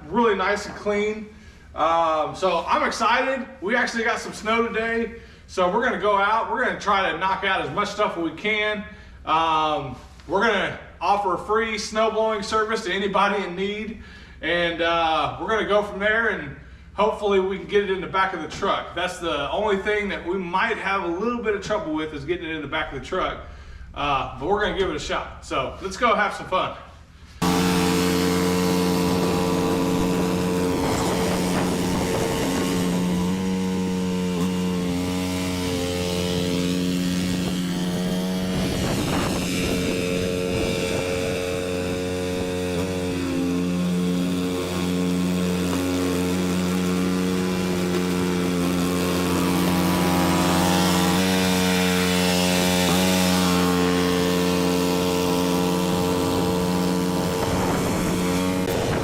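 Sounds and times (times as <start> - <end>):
snow blower engine running: 27.2 - 59.0.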